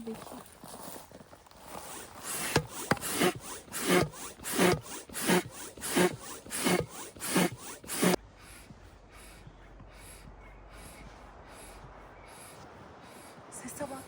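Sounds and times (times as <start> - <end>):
tent zipper being pulled: 0.0 - 8.2.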